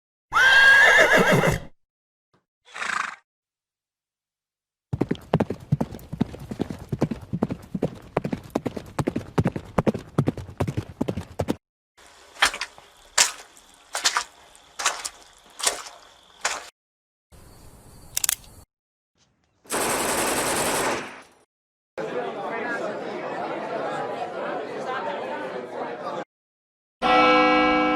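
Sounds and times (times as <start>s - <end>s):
horse whinnying: 0.3s - 1.8s, 2.7s - 3.2s
hooves clip-clopping on hard ground: 4.9s - 11.6s, 12.2s - 16.7s
sharp clicks: 18.1s - 18.5s.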